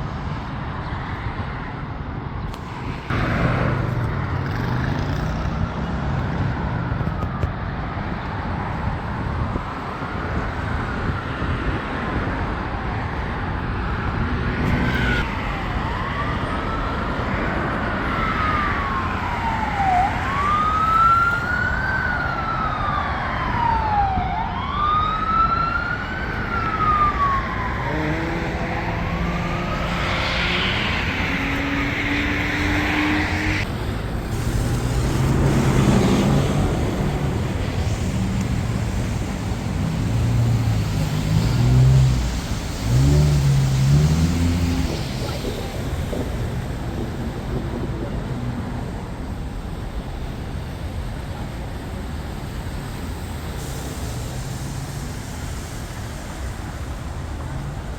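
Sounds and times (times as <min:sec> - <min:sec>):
traffic engines passing: 0:00.0 - 0:57.9
emergency siren wailing: 0:06.2 - 0:33.7, 0:34.3 - 0:49.5.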